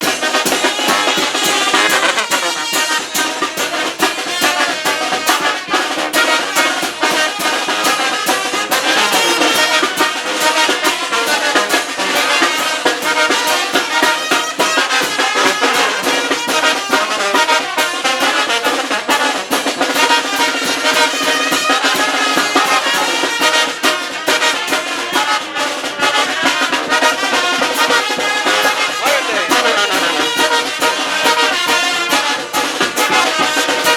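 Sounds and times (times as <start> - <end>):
brass band playing: 0.0 - 33.9
busy drum beat: 0.0 - 33.9.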